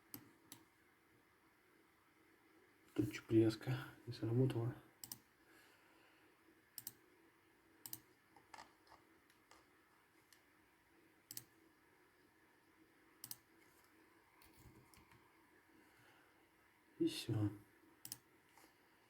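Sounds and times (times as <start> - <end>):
faint room hiss: 0.0 - 19.0
computer mouse clicking: 0.1 - 0.7, 5.0 - 5.3, 6.8 - 7.0, 7.8 - 9.7, 11.3 - 11.6, 13.2 - 15.2, 18.0 - 18.7.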